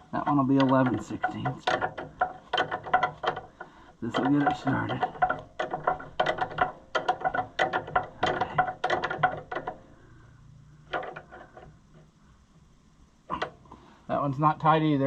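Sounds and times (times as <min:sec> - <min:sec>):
socket ratchet clicking: 0:00.2 - 0:10.0.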